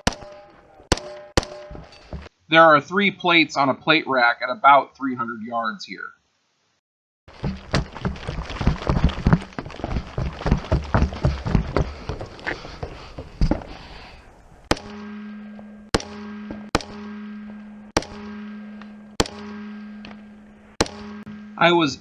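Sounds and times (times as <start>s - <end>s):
clattering knocks and thumps: 1.3s - 2.3s, 7.3s - 13.8s
steady low hum: 9.3s - 22.0s.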